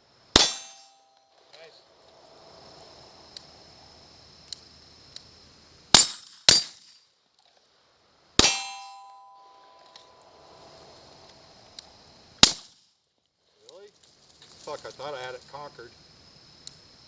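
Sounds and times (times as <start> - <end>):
gunshots: 0.4 - 0.9
steel target ringing: 0.4 - 1.4, 8.4 - 10.3.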